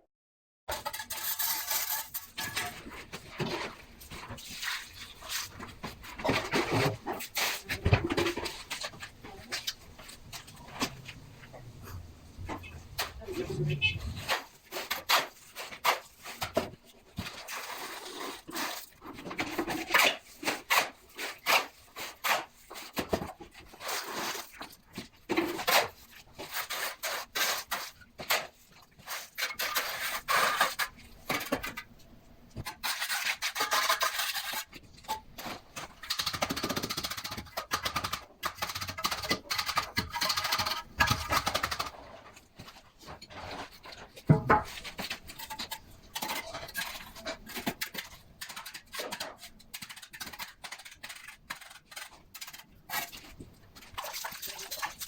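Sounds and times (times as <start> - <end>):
hand tools scraping: 0.7 - 24.6, 32.6 - 36.5.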